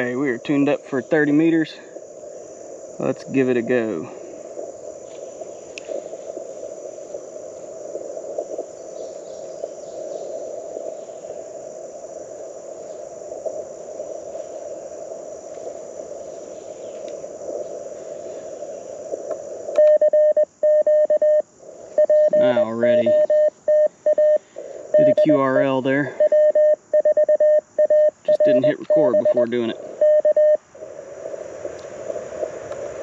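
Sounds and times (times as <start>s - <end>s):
high insect drone: 0.0s - 33.0s
radio band noise hiss: 0.0s - 33.0s
morse code beeps: 19.8s - 21.4s, 22.0s - 30.6s.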